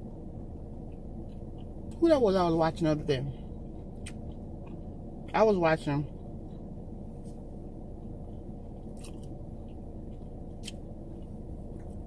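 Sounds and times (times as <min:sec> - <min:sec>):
steady low hum: 0:00.0 - 0:12.0
chewing and biting sandwich: 0:00.5 - 0:02.0, 0:03.4 - 0:05.3, 0:06.0 - 0:12.0.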